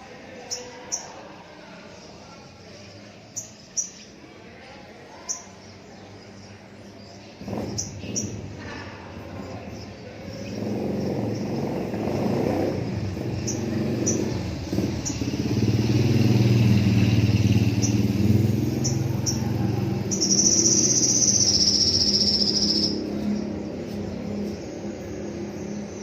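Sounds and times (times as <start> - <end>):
motorcycle engine running: 7.4 - 26.0.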